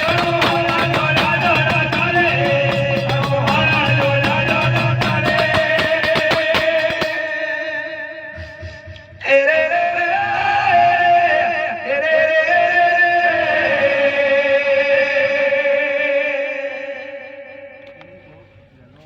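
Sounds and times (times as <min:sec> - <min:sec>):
musical accompaniment: 0:00.0 - 0:07.4.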